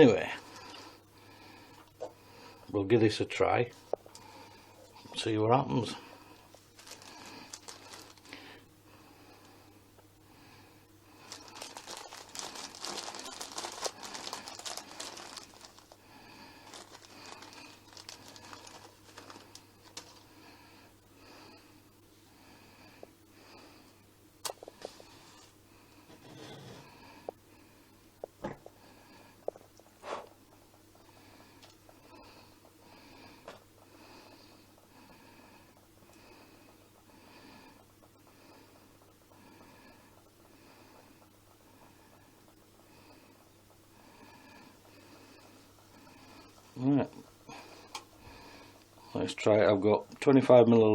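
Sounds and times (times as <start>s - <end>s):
crinkling and rustling: 6.3s - 8.4s, 11.2s - 20.4s
burner flame hissing: 23.8s - 36.1s.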